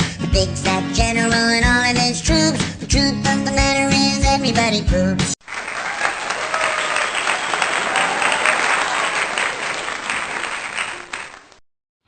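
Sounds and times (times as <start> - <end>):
crowd applauding: 5.4 - 11.6.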